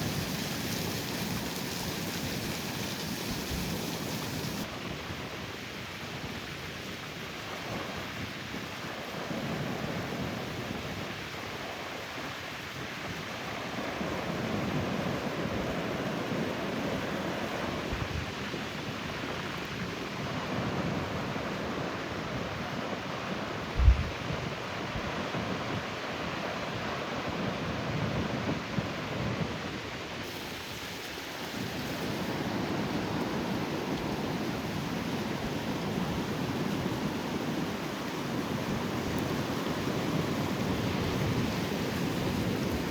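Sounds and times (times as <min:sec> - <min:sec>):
ocean surf washing: 0:00.0 - 0:05.3, 0:30.1 - 0:42.9
short low thump: 0:23.8 - 0:24.1
wind buffeting microphone: 0:23.8 - 0:24.6.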